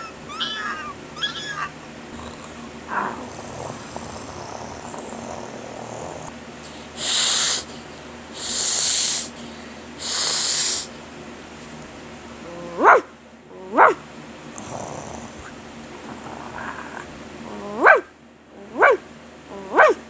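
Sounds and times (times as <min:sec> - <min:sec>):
person hissing: 0:06.8 - 0:11.0.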